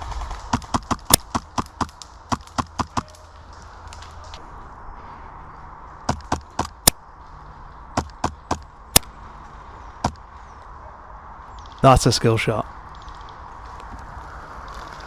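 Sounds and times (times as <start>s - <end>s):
outdoor background hiss: 11.8s - 13.6s.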